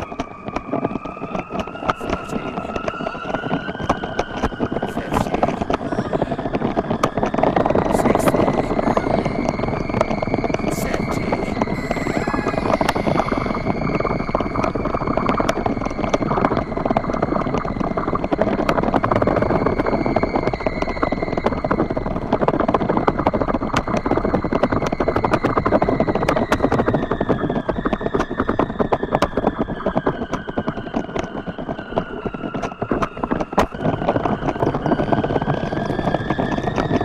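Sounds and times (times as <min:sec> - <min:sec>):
high whistle: 0:00.0 - 0:18.0.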